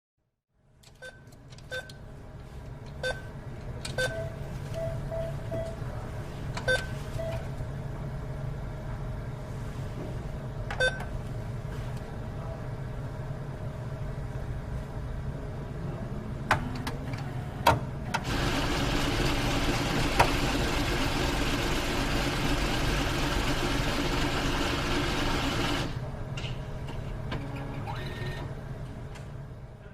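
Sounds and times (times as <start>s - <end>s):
low machine hum: 0.6s - 29.9s
keypad beeps: 4.0s - 5.8s, 6.6s - 7.5s
dispensing mechanism whirring: 18.2s - 26.1s.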